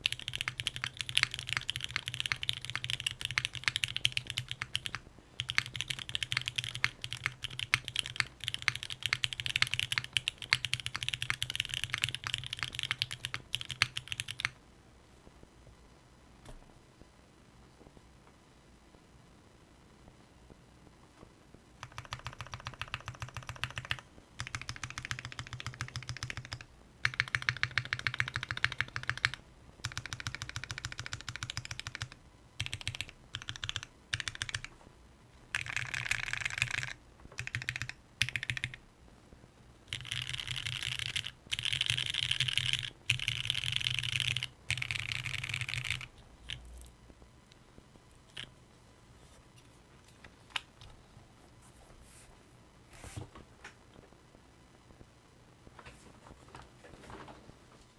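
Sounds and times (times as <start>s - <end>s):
mechanical keyboard typing: 0.0s - 14.6s, 21.8s - 34.7s, 35.5s - 38.8s, 39.9s - 46.6s.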